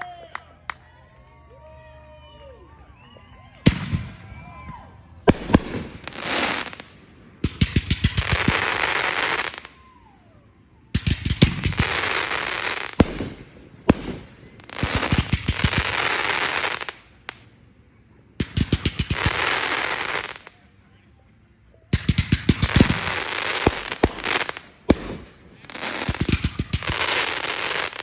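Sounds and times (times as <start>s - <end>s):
fireworks bangs: 3.6s - 9.7s, 10.9s - 17.1s, 21.9s - 28.0s
fireworks crackling: 5.2s - 9.8s, 10.9s - 17.6s, 18.4s - 20.7s, 21.9s - 28.0s.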